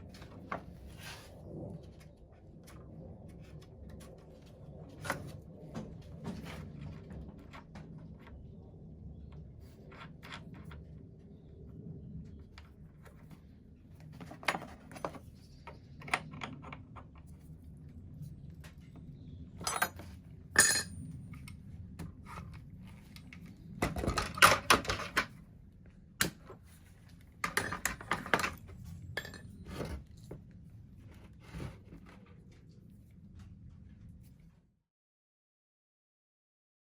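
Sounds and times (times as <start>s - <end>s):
metal tools clinking and rattling: 19.6s - 21.0s, 27.4s - 29.6s.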